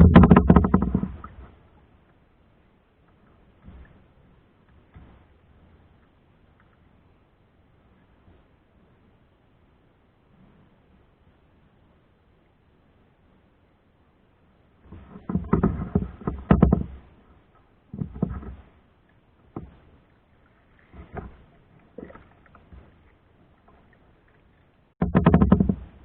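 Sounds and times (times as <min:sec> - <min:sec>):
paddle knocking against hull: 0:00.0 - 0:01.6, 0:14.9 - 0:17.2, 0:17.9 - 0:18.7, 0:19.4 - 0:26.0
paddle splashing water: 0:00.0 - 0:07.1, 0:14.8 - 0:26.0.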